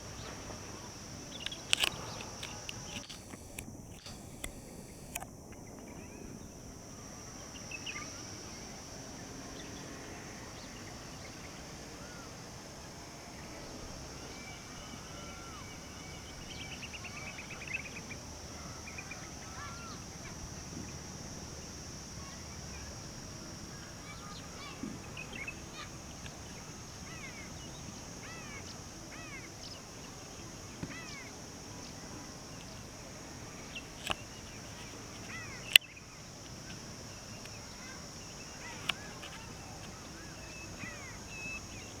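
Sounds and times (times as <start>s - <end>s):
steady high-pitched drone: 0.0s - 10.9s
sharp clicks: 1.3s - 5.7s.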